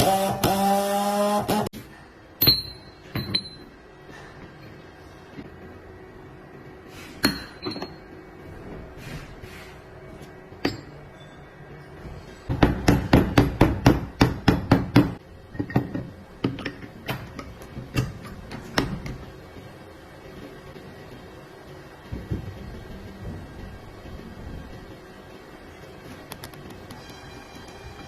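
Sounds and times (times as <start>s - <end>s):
hammer striking metal: 2.4s - 3.6s.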